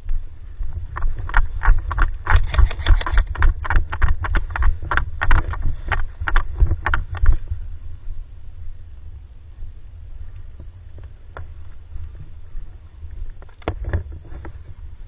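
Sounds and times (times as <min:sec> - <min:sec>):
low rumble on microphone: 0:00.0 - 0:15.0
airsoft guns firing: 0:02.2 - 0:04.1.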